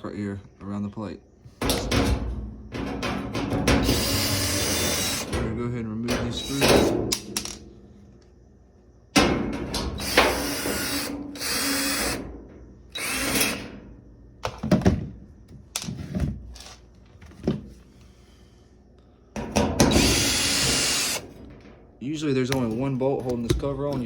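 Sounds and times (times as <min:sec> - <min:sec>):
power drill running: 0:03.8 - 0:05.3, 0:10.0 - 0:12.2, 0:12.9 - 0:13.6, 0:19.9 - 0:21.2.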